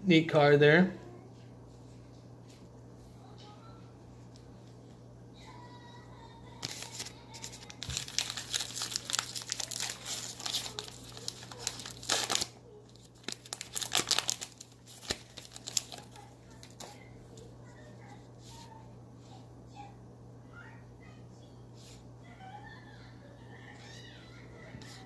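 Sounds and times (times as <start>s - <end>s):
wrapper tearing and crinkling: 6.6s - 16.9s.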